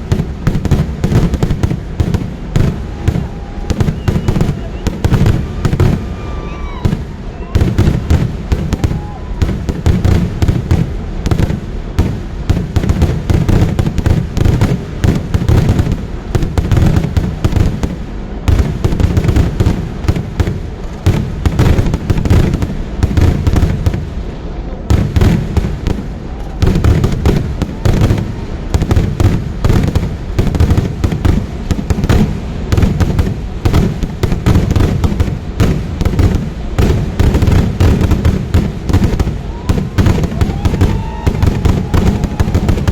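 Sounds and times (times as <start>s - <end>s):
rapid firecracker explosions: 0.0s - 42.9s.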